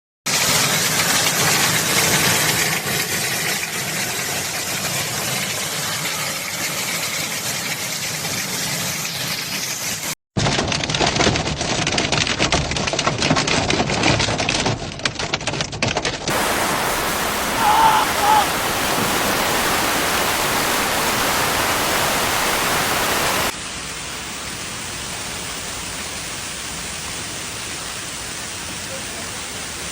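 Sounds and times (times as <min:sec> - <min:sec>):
hailstones clattering on hard surfaces: 0:10.4 - 0:16.3
hail and rain pouring: 0:10.4 - 0:23.5.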